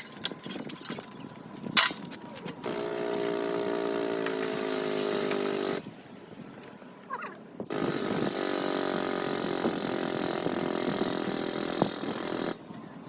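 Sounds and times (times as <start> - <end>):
small motor-driven tool running: 7.7 - 12.6.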